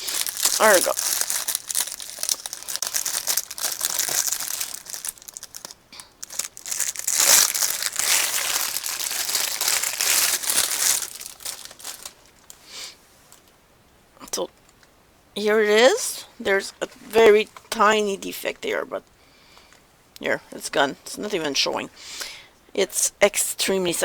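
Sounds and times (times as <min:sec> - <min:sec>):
plastic packaging crinkling: 0:00.0 - 0:12.6.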